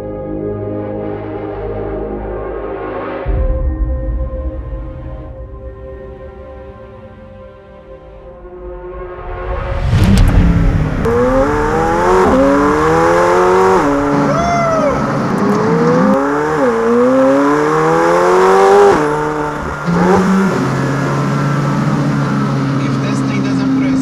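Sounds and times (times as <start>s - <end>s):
sports car engine accelerating: 9.8s - 24.0s.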